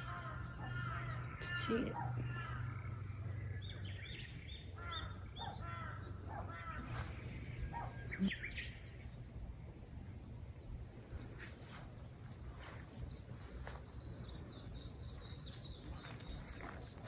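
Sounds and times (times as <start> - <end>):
crows cawing: 0.0 - 3.5, 4.7 - 7.0
low background rumble: 0.0 - 17.0.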